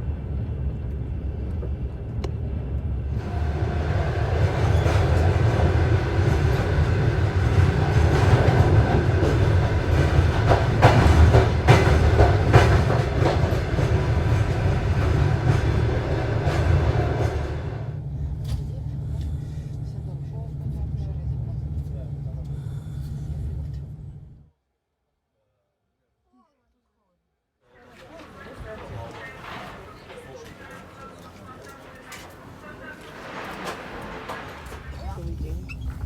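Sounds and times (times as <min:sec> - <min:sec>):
train cars rumbling: 0:00.0 - 0:24.4, 0:27.7 - 0:36.0
wheels clattering over rail joints: 0:27.9 - 0:36.0.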